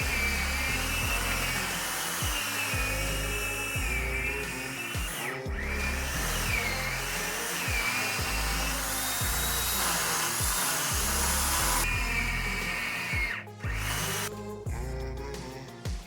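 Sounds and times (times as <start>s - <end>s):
music with deep bass: 0.0s - 16.0s
kick drum beat: 2.2s - 3.0s, 3.8s - 4.1s, 5.0s - 6.8s, 7.7s - 8.5s, 9.2s - 9.7s, 10.4s - 12.2s, 13.1s - 14.1s, 14.7s - 15.0s.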